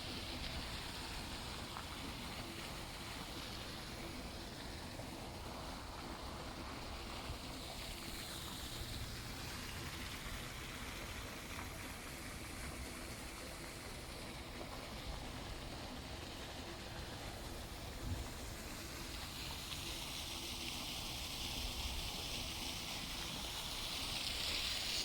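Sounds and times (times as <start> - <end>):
rain: 0.0 - 25.0
traffic on wet streets: 7.3 - 10.6.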